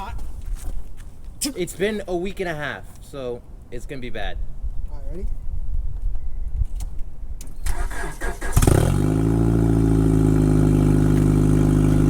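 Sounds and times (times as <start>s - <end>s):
car engine starter cranking: 7.6s - 9.1s
car engine idling: 8.6s - 12.0s.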